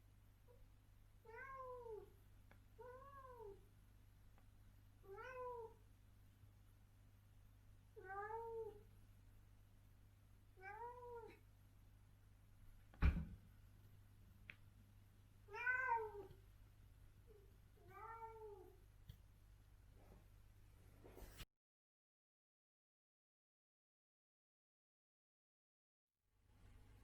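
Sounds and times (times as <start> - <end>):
cat meowing: 1.3 - 2.1, 2.8 - 3.6, 5.0 - 5.8, 8.0 - 8.8, 10.6 - 11.4, 15.5 - 16.4, 17.8 - 18.8.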